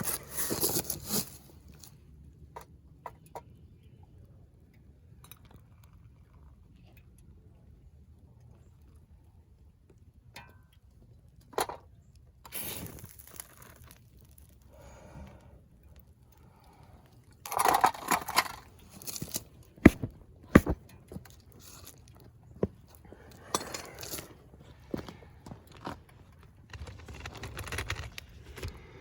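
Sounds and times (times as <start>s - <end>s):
metal tools clattering and scraping: 17.5s - 22.1s, 22.9s - 24.4s
sharp knocks: 19.8s - 20.8s.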